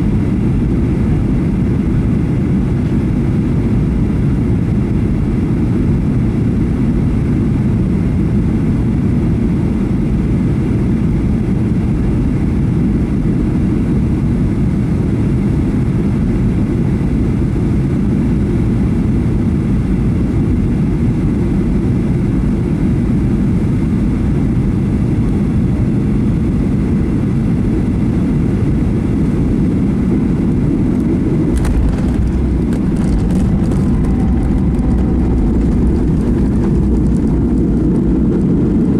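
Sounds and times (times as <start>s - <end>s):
airplane engine and airflow rumble: 0.0s - 38.9s
landing gear knocks and rattles: 31.6s - 38.0s.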